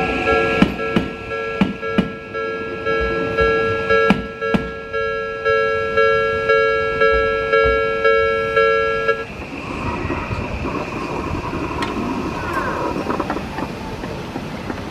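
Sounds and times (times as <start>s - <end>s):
level crossing alarm bell: 0.0s - 9.4s
vehicle noise: 0.0s - 14.9s.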